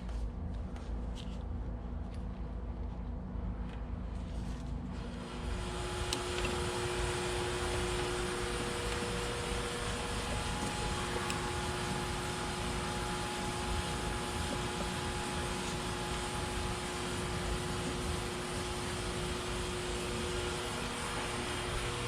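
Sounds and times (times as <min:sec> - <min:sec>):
machine running with whine: 0:05.0 - 0:22.0.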